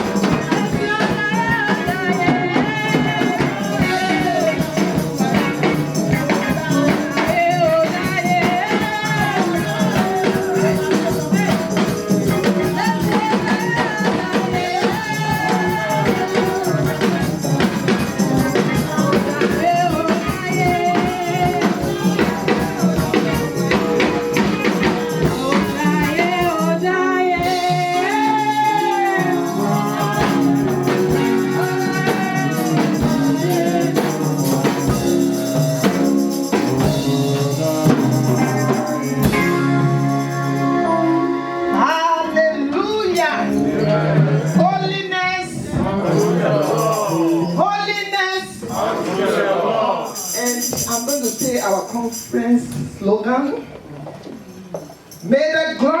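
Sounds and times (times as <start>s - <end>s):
fast steady drums: 0.0s - 40.7s, 50.1s - 52.6s
tambourine: 0.0s - 41.6s, 43.1s - 49.4s, 50.0s - 52.6s, 54.8s - 55.8s
person singing: 0.0s - 47.8s.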